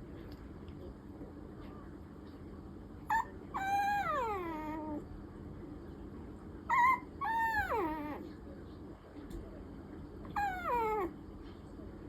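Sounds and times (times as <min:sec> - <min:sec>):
puppy whining: 0:03.0 - 0:05.1, 0:06.7 - 0:08.3, 0:10.3 - 0:11.2
puppy whimper: 0:03.1 - 0:05.0, 0:06.7 - 0:08.3, 0:10.3 - 0:11.2.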